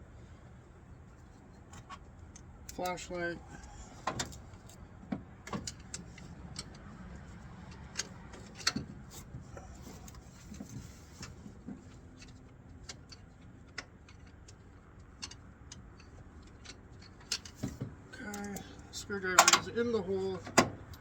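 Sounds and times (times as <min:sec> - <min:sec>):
hand tools clicking and knocking: 0:19.4 - 0:19.8.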